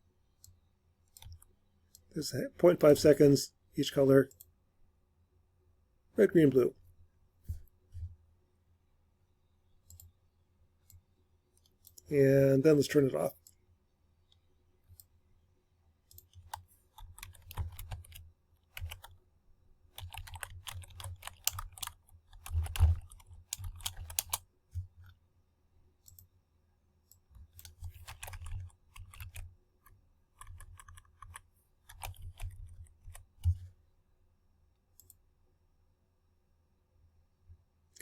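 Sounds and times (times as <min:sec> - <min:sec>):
typing on computer keyboard: 0:01.1 - 0:01.5, 0:16.1 - 0:19.2, 0:19.9 - 0:24.4, 0:27.4 - 0:29.5, 0:30.3 - 0:33.6.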